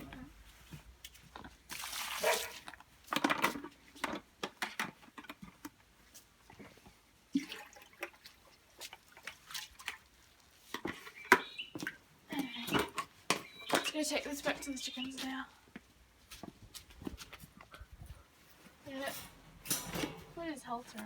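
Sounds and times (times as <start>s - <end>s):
water splashing and dripping: 1.0s - 4.0s, 6.5s - 15.4s.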